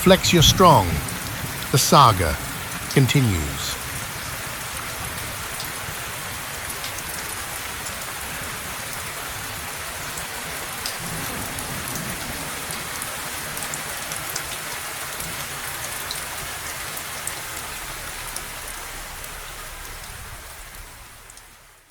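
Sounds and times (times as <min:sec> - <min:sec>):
steady rain falling: 0:00.0 - 0:21.9.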